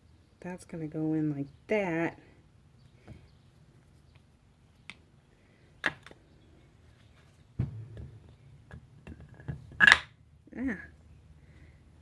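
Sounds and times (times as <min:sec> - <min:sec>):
brief rattle: 0:07.6 - 0:08.5.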